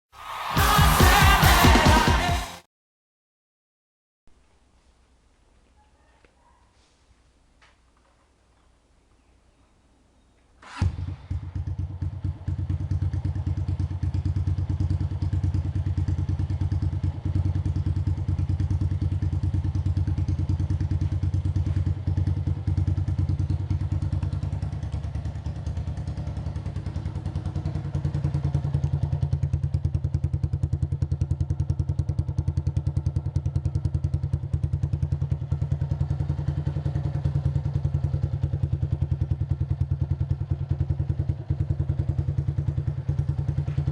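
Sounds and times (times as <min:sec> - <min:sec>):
motorcycle engine idling: 0:10.8 - 0:43.9.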